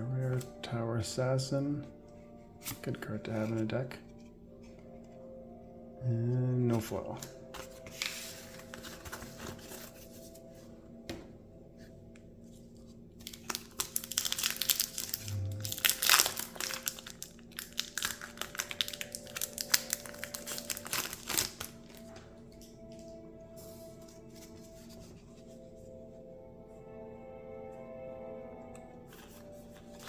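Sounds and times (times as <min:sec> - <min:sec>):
soft background music: 0:00.0 - 0:30.0
wrapper tearing and crinkling: 0:13.2 - 0:22.1.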